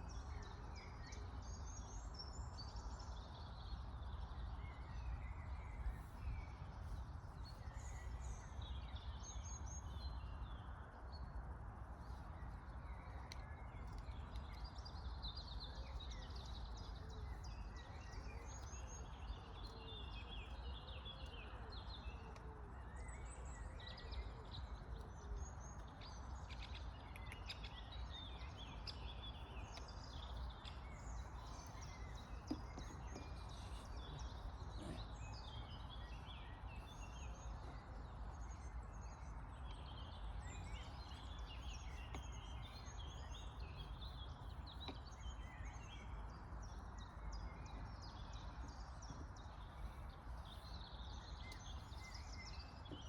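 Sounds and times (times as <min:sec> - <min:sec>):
birds chirping: 0:25.7 - 0:38.0.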